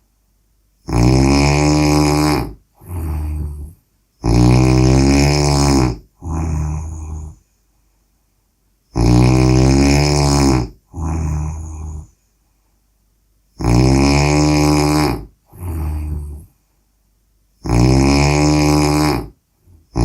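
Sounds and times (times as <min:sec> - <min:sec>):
person snoring: 0:00.8 - 0:07.4, 0:08.9 - 0:12.2, 0:13.6 - 0:16.6, 0:17.6 - 0:20.0.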